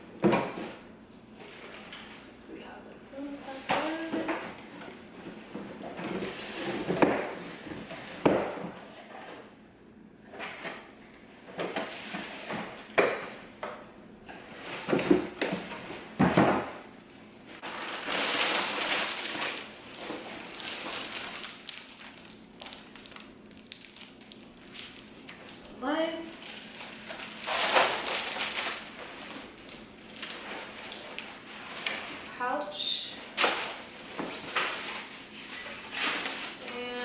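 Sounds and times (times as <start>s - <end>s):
cardboard packaging handled: 17.6s - 25.0s, 26.3s - 32.2s
packaging rustling: 17.6s - 25.6s, 26.3s - 32.2s, 33.4s - 36.7s.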